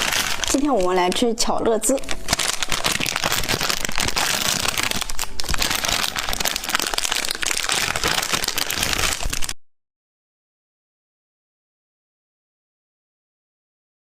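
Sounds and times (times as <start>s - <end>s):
plastic wrapper crinkling: 0.0s - 9.6s.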